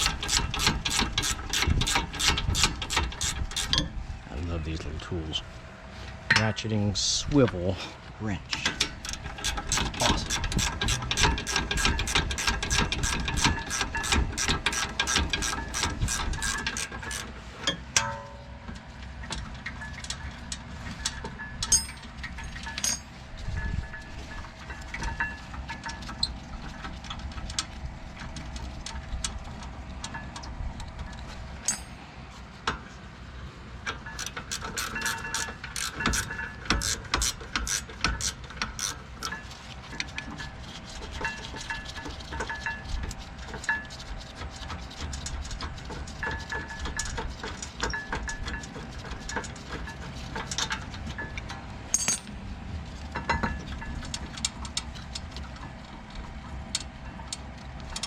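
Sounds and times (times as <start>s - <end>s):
ratchet wrench clicking: 9.0s - 17.3s, 34.2s - 39.4s
tools knocking on metal: 52.0s - 52.3s.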